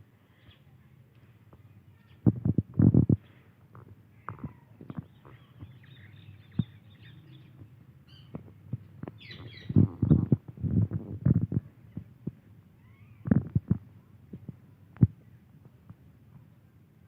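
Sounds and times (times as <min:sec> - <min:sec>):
parakeet soft high chirps: 0:09.2 - 0:10.3.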